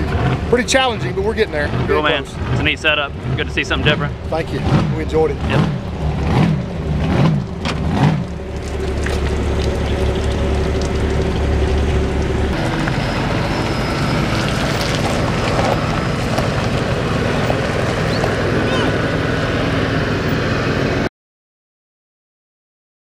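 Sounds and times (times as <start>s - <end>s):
engine rumbling: 0.0s - 21.1s
voices: 0.4s - 5.8s.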